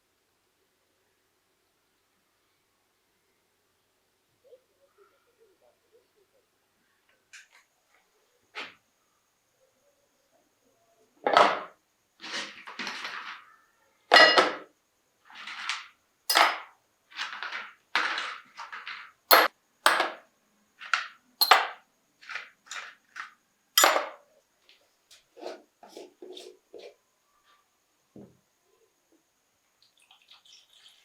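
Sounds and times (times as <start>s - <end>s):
metal parts and tools clinking: 14.1s - 14.7s, 15.4s - 20.2s, 20.8s - 24.2s.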